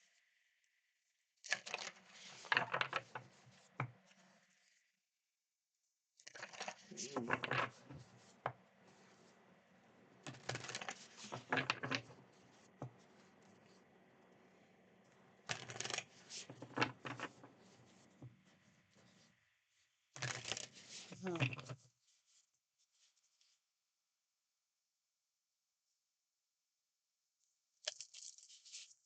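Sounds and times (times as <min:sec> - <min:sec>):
cards being shuffled: 0:01.5 - 0:03.9, 0:06.3 - 0:09.4, 0:10.0 - 0:18.1, 0:20.2 - 0:21.7.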